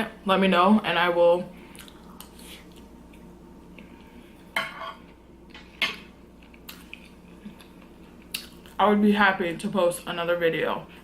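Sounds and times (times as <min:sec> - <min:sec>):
cutlery clinking on a plate: 0:04.6 - 0:05.0.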